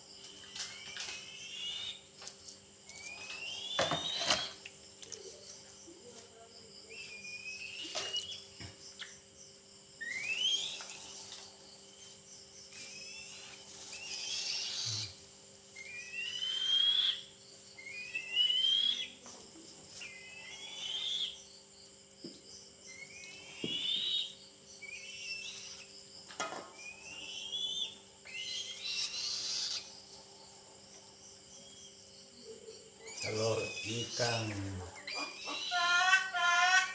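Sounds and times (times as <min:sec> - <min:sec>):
eagle chick whistled calls: 0:02.9 - 0:04.6, 0:10.0 - 0:10.9, 0:15.8 - 0:19.2, 0:22.9 - 0:25.8, 0:26.8 - 0:29.9.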